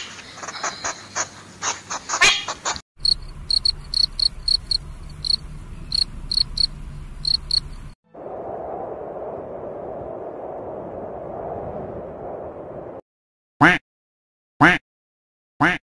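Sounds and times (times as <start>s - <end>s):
cricket chirping: 3.0s - 8.0s.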